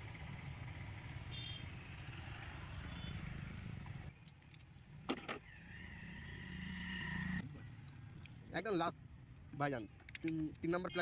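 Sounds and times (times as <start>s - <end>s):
sharp clicks: 10.0s - 10.5s.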